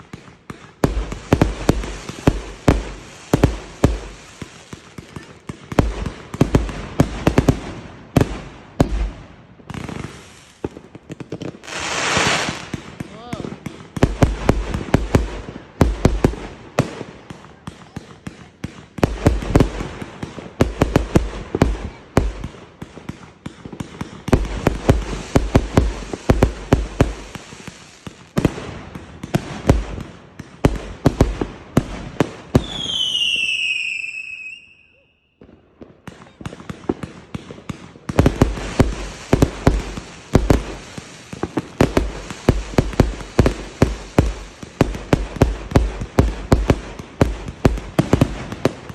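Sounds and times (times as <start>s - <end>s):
fireworks crackling bangs: 0.0s - 34.6s, 35.4s - 48.9s
falling firework whistle: 32.6s - 35.4s.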